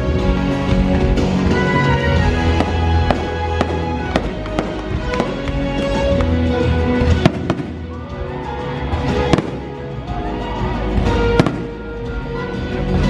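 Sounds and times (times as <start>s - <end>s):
music soundtrack: 0.0s - 13.0s
fireworks bangs and pops: 2.5s - 8.1s, 9.2s - 9.8s, 11.0s - 11.9s.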